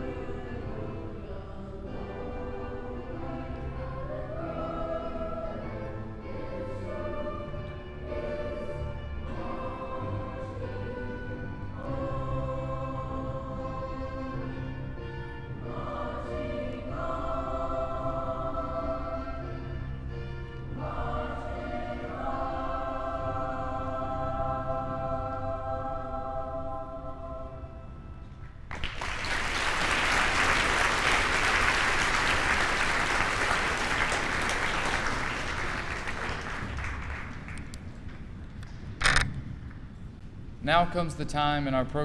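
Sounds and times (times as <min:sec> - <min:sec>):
choir singing long chords: 0:00.0 - 0:28.4, 0:29.1 - 0:37.4
audience applauding: 0:28.7 - 0:37.9.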